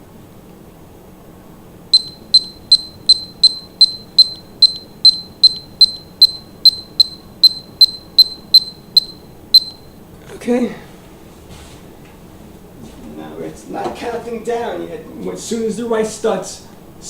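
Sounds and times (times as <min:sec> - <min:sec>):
kitchen timer beeping: 0:01.9 - 0:09.9.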